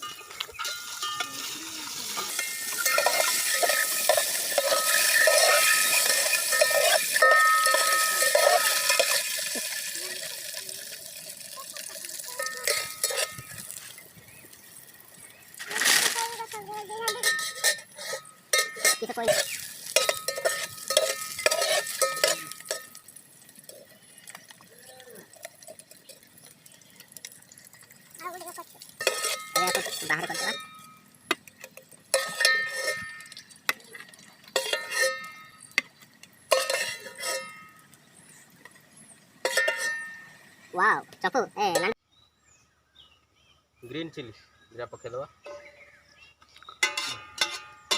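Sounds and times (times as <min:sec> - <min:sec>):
metal utensils clinking on pan: 0:00.0 - 0:40.9, 0:41.6 - 0:42.0, 0:46.6 - 0:47.9.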